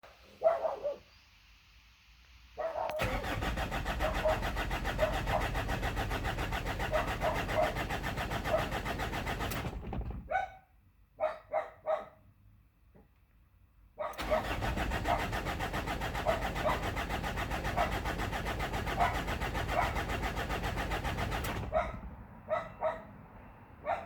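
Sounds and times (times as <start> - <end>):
diesel engine cranking on starter: 2.9 - 10.3, 14.2 - 22.5.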